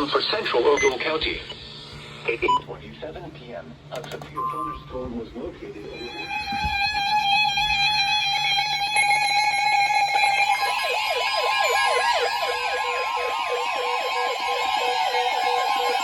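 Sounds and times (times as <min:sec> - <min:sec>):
warbling siren-like alarm: 0:06.9 - 0:16.0.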